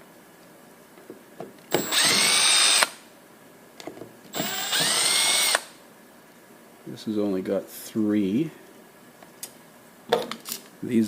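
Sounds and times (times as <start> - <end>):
power drill spinning: 1.7 - 3.0, 4.3 - 5.7.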